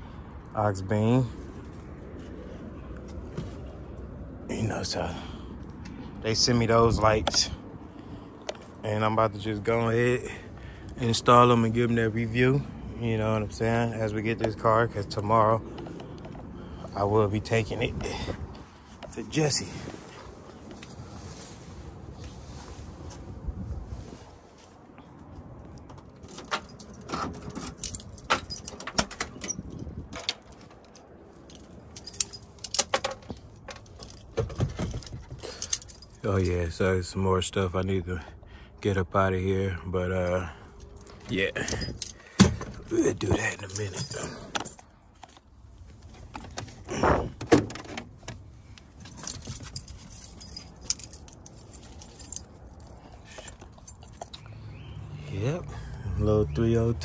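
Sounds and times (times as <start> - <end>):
keys jangling: 25.8 - 36.8, 40.7 - 45.4, 49.0 - 54.6
small metal objects jingling: 26.0 - 36.8, 40.8 - 45.3, 49.0 - 54.8.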